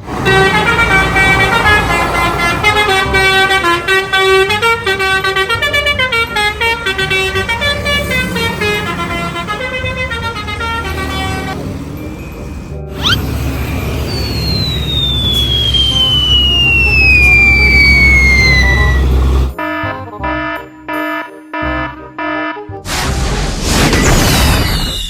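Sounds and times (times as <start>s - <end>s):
multi-tone bus horn tune: 0.0s - 11.9s, 15.4s - 22.9s
low engine rumble: 8.2s - 19.6s.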